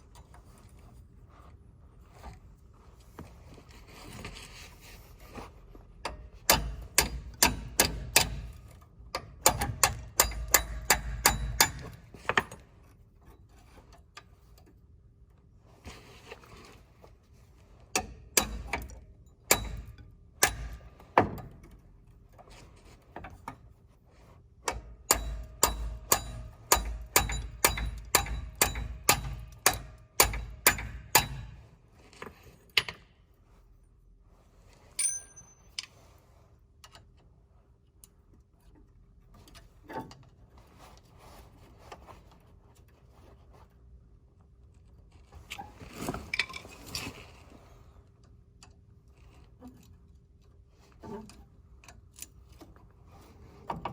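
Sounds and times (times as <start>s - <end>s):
hammer tapping a metal punch: 6.5s - 8.5s, 9.4s - 12.0s, 18.0s - 18.9s, 19.5s - 20.8s, 24.7s - 31.6s.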